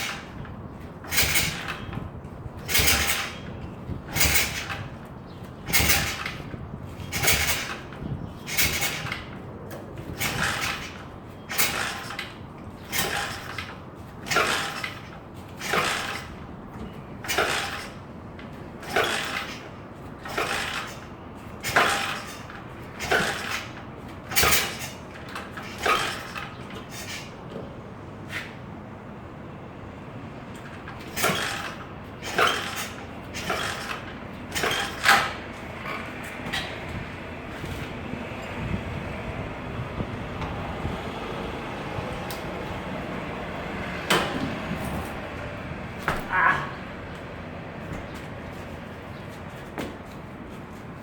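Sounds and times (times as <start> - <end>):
pit bike being kick-started: 0.0 - 27.6, 30.6 - 37.9, 43.8 - 47.2
engine turning over without firing: 1.0 - 1.9.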